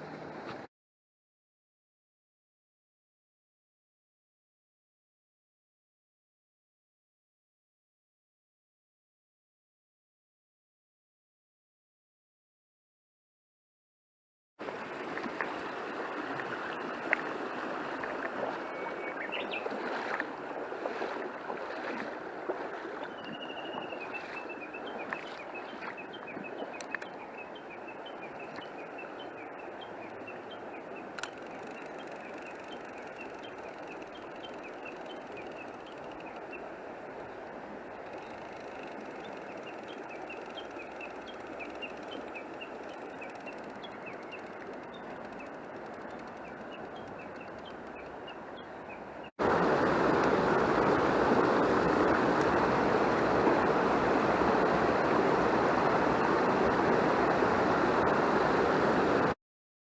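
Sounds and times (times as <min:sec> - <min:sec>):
stream flowing: 0:00.0 - 0:00.7, 0:14.6 - 0:59.4.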